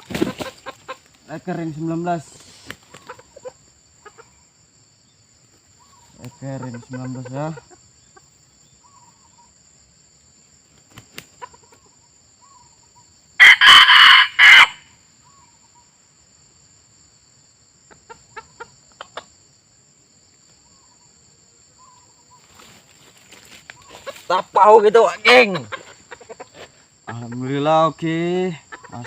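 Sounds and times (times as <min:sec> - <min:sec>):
high insect drone: 0:00.0 - 0:29.0
rooster crowing: 0:13.4 - 0:14.9.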